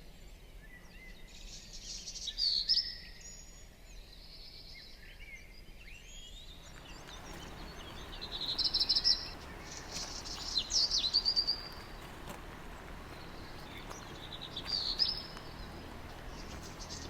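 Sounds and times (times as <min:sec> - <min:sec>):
wild birds singing: 0:00.6 - 0:17.0
fast high bird trills: 0:06.7 - 0:17.0.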